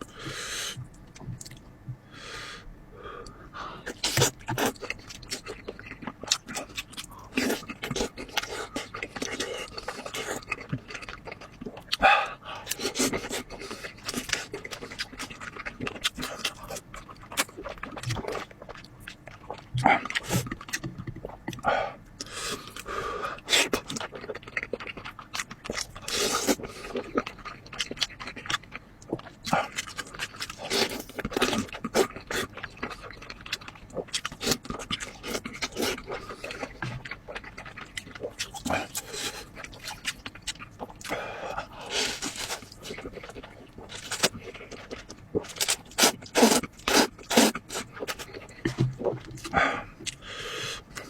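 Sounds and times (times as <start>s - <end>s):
wet chewing and slurping: 3.9s - 12.0s, 12.6s - 21.6s, 22.2s - 51.0s
quick breaths: 49.5s - 50.9s.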